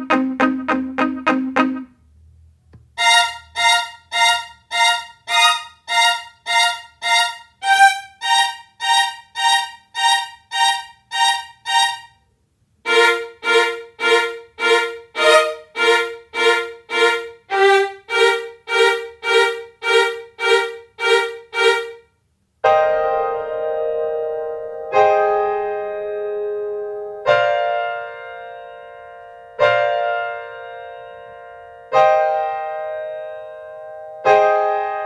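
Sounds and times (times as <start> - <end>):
held chord: 0.0 - 1.9, 12.9 - 22.0
string instrument repeating notes: 0.0 - 2.0, 2.8 - 12.2, 12.9 - 22.1.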